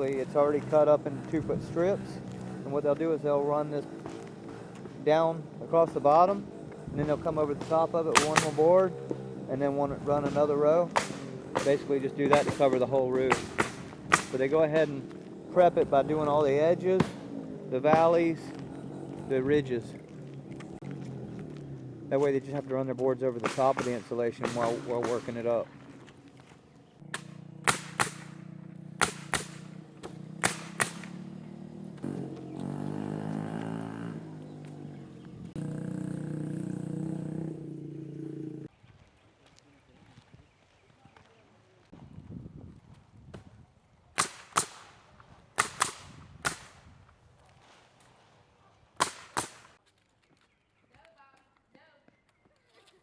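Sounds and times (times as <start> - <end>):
boards being nailed: 7.6 - 8.6, 10.2 - 14.4, 23.4 - 25.6, 27.1 - 28.4, 29.0 - 31.2, 45.6 - 46.8, 49.0 - 49.7
nails hammered into wood: 27.1 - 28.4, 29.0 - 29.6, 30.4 - 31.1, 45.6 - 46.7, 49.0 - 49.7.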